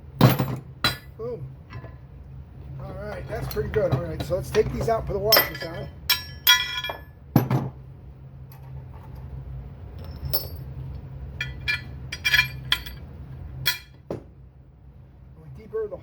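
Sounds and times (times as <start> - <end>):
steady low hum: 0.0 - 16.0
bolts and washers clinking on steel: 0.3 - 2.0, 3.1 - 7.1, 10.0 - 10.7, 11.4 - 14.0.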